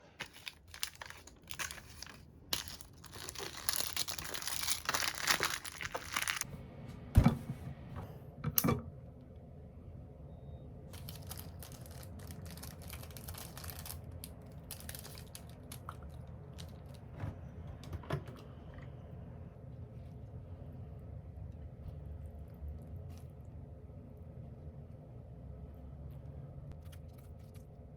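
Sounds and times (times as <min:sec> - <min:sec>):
crinkling and rustling: 0:00.0 - 0:06.5, 0:11.0 - 0:18.4, 0:26.7 - 0:27.9.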